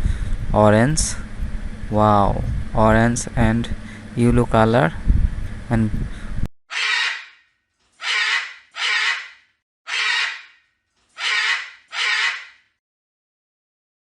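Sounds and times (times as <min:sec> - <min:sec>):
parrot squawking: 0:06.7 - 0:12.6.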